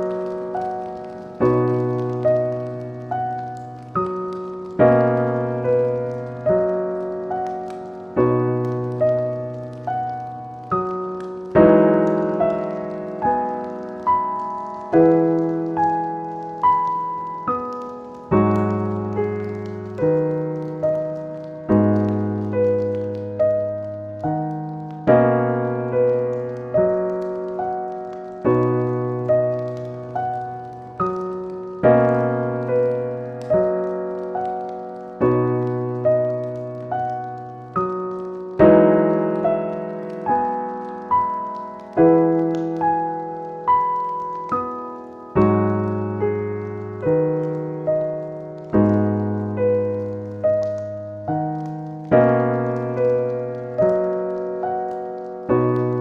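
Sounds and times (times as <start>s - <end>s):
slow solo piano: 0.0s - 56.0s.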